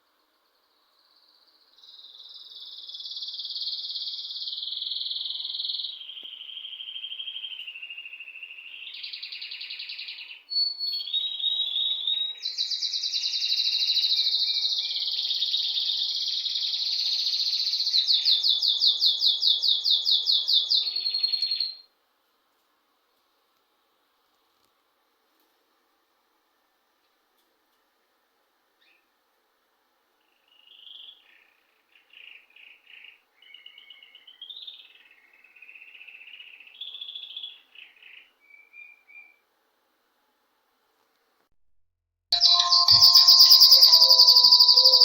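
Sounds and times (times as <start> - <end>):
bird singing trills and chirps: 42.4 - 45.0.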